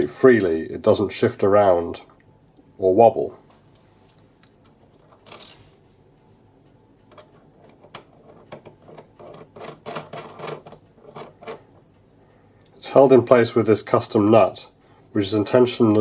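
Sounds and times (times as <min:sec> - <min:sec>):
metal parts clicking and tapping: 0:07.1 - 0:11.9.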